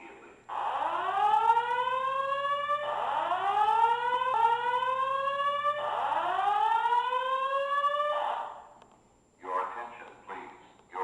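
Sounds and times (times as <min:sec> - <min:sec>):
fire alarm whooping: 0:00.5 - 0:08.7.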